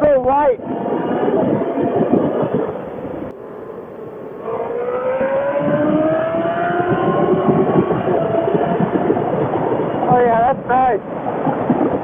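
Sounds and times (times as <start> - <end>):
wind rumble: 0.0 - 12.0
motorcycle engine accelerating: 3.4 - 9.8.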